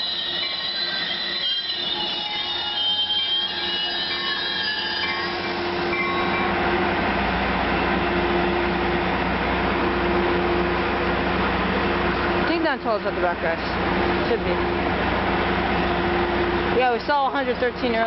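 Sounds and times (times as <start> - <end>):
train wheel squeal: 0.0 - 6.6
train rumble and hum: 0.0 - 18.0.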